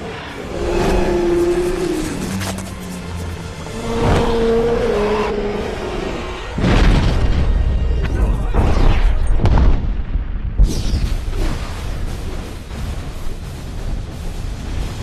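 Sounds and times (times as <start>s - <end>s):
explosion boom and deep rumble: 6.6s - 15.0s.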